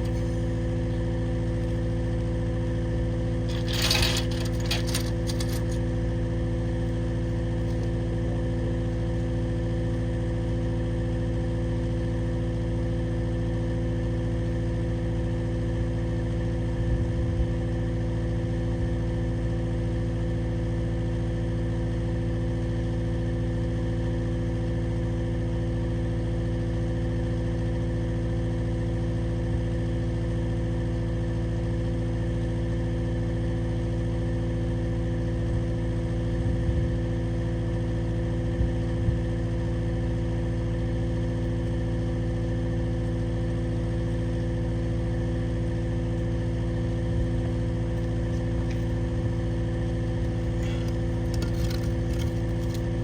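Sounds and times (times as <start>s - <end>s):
engine idling: 0.0s - 12.8s, 38.8s - 53.0s.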